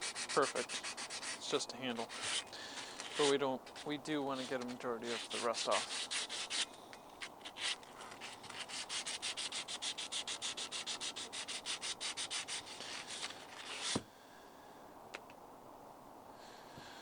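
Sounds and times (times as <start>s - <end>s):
scrubbing metal with abrasive: 0.0s - 6.8s.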